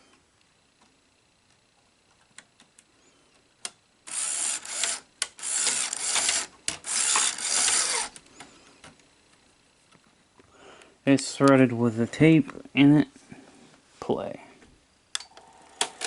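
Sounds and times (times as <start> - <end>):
tape mechanism running: 3.6 - 9.4.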